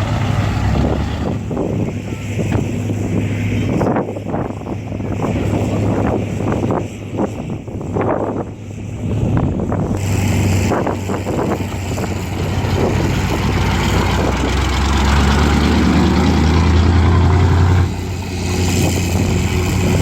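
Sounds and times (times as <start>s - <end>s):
diesel engine droning: 0.0s - 20.0s.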